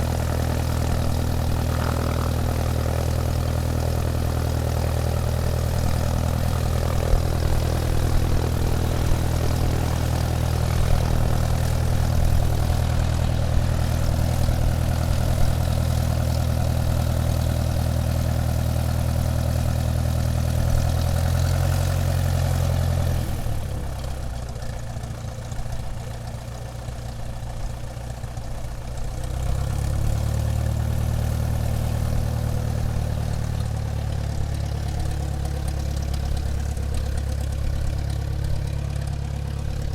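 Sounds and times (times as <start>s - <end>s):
airplane engines droning: 0.0s - 17.7s.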